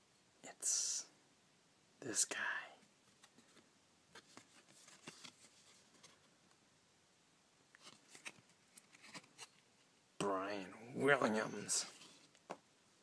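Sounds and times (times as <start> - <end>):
trading cards flicking and scraping: 3.2 - 6.2, 7.8 - 9.6.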